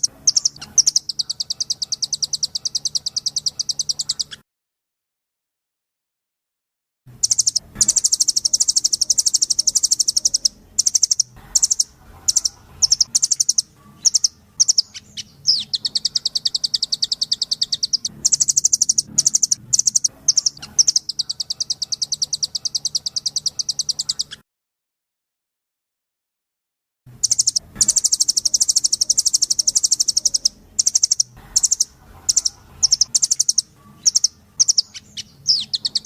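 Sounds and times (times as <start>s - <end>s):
bird calling in high trills: 7.2s - 24.4s.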